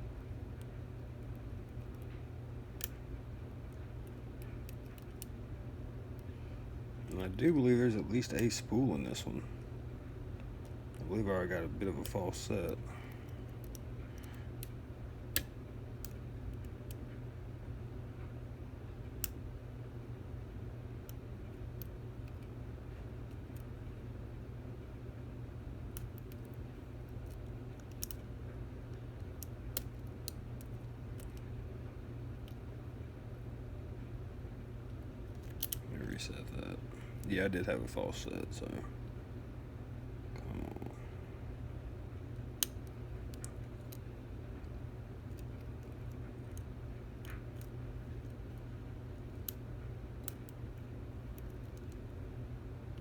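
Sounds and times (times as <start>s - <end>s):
steady low hum: 0.0s - 53.0s
lock pick metallic clicks: 35.4s - 35.8s.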